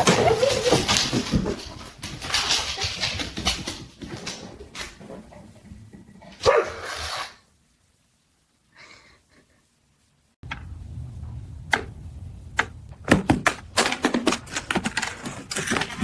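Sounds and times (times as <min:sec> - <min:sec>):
dog barking: 0:06.4 - 0:07.0.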